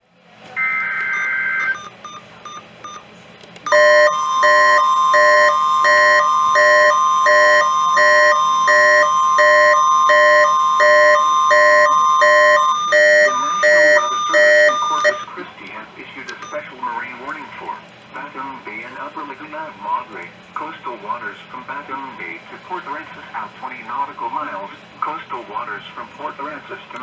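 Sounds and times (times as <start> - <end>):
pulsing electronic alarm beeps: 0.6 - 3.0, 3.7 - 15.3
two-pitch data tones: 0.6 - 3.0, 3.7 - 15.3
steady alert tone: 3.7 - 15.3.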